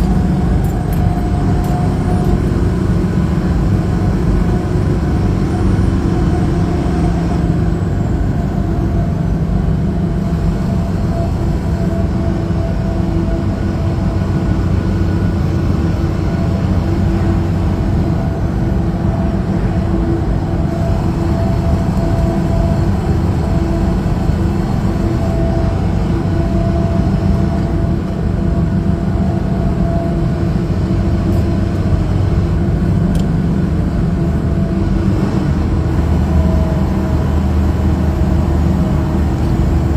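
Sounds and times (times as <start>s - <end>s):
heavy truck engine and road drone: 0.0s - 39.9s.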